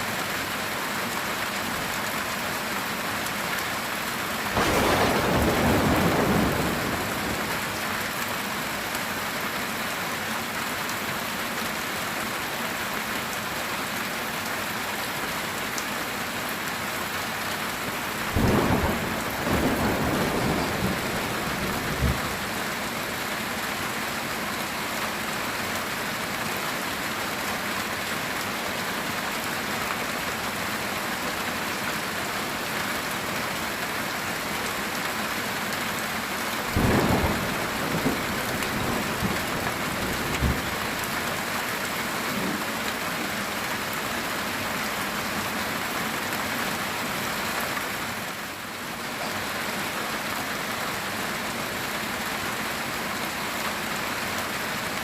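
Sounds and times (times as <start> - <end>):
heavy rain on a tin roof: 0.0 - 55.0
thunder rumbling: 4.6 - 7.8, 18.2 - 22.7, 36.7 - 41.1.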